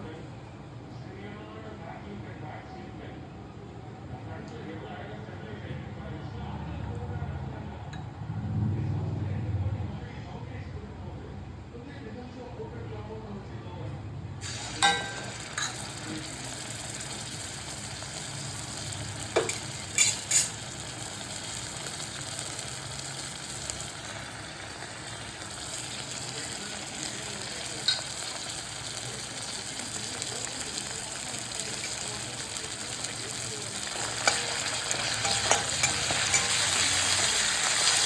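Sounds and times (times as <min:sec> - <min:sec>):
chicken sizzling in oil: 0:14.4 - 0:38.0.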